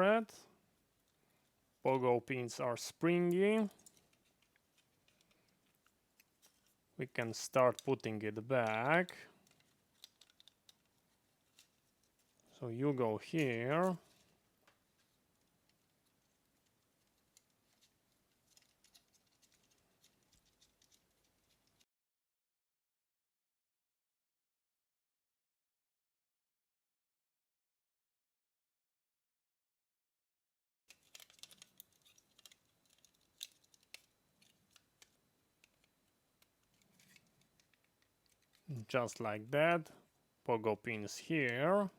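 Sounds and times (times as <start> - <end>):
small clicks and taps of handled parts: 3.7 - 6.8, 7.7 - 12.5, 13.4 - 21.8, 30.9 - 38.7.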